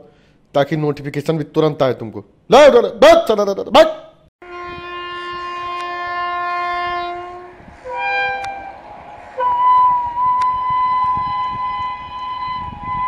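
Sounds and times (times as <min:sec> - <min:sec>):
locomotive horn blasts: 0:04.4 - 0:13.0.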